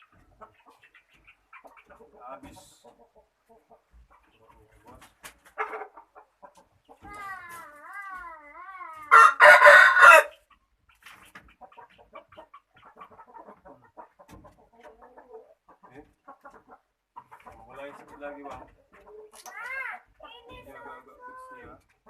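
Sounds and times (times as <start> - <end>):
chicken clucking softly: 0.0 - 22.0
chicken squawking: 5.3 - 18.1.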